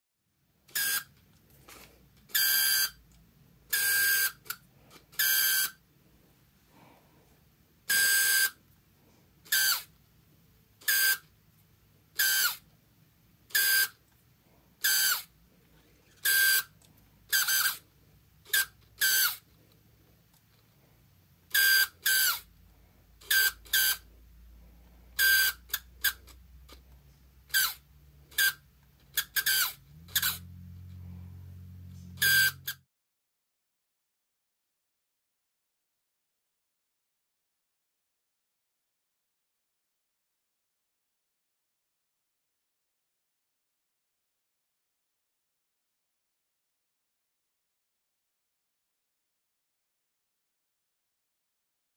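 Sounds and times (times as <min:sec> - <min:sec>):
lens focus motor squeaking: 0:00.7 - 0:01.2, 0:01.8 - 0:03.0, 0:03.7 - 0:05.8, 0:07.9 - 0:08.6, 0:09.4 - 0:10.0, 0:10.8 - 0:11.3, 0:12.1 - 0:12.7, 0:13.5 - 0:14.0, 0:14.8 - 0:15.4, 0:16.1 - 0:17.9, 0:18.5 - 0:19.5, 0:21.5 - 0:22.5, 0:23.2 - 0:24.1, 0:25.2 - 0:26.8, 0:27.4 - 0:30.5, 0:32.0 - 0:32.8.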